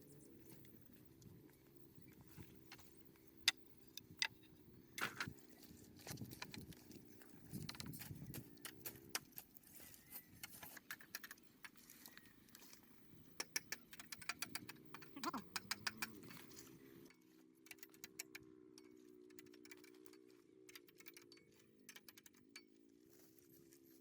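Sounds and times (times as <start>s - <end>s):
sharp clicks and light knocks: 13.3s - 16.6s, 17.6s - 22.7s.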